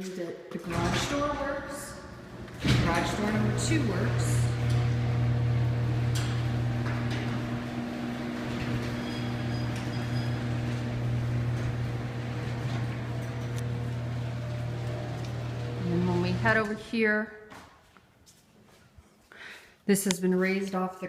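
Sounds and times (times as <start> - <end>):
garage door track clicks: 0.6 - 16.7
garage door opener motor hum: 0.7 - 16.8.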